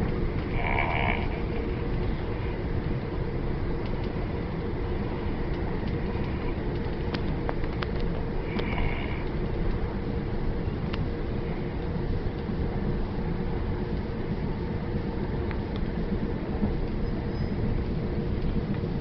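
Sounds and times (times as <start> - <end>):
train carriage rumble: 0.0 - 19.0
faint clicks: 5.5 - 9.8, 10.8 - 11.1.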